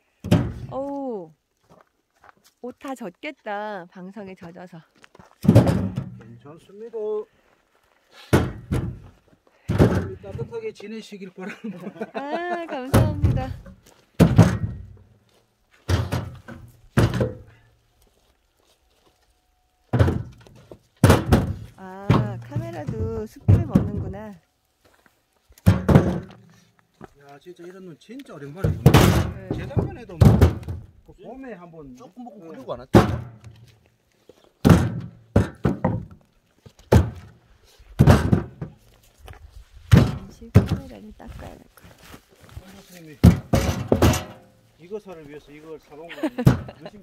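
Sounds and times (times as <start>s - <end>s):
logs dropped onto woodpile: 0.2s - 1.0s, 5.0s - 6.4s, 8.3s - 10.6s, 12.8s - 18.2s, 19.8s - 24.2s, 24.8s - 27.1s, 28.6s - 31.0s, 32.9s - 37.4s, 38.0s - 41.1s, 41.8s - 44.5s.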